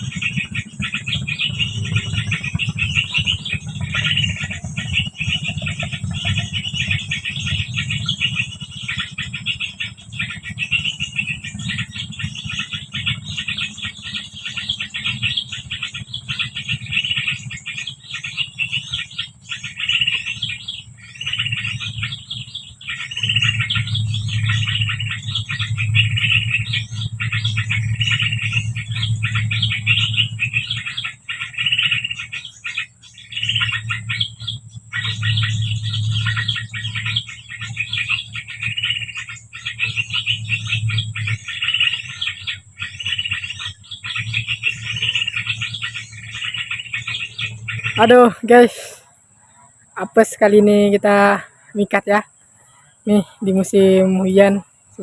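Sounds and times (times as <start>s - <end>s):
small bird chirping: 0.0s - 55.0s
steady low hum: 0.0s - 55.0s.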